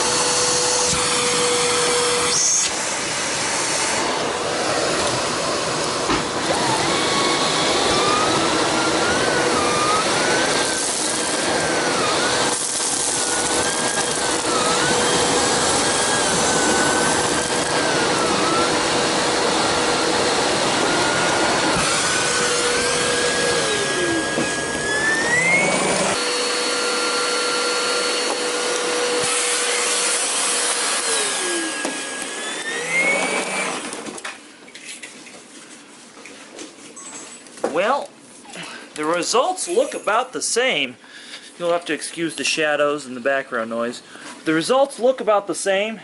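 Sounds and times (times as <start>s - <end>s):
vacuum cleaner motor whine: 0.0s - 34.3s.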